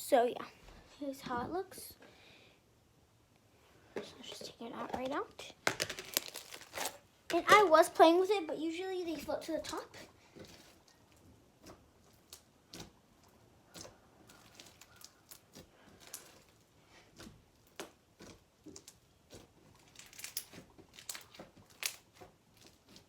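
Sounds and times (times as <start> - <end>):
foam slime crackling and popping: 5.6 - 7.9, 9.2 - 23.0.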